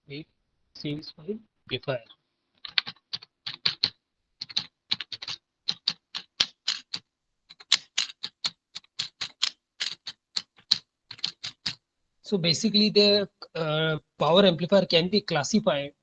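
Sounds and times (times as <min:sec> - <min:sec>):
typing on computer keyboard: 0:02.6 - 0:11.8.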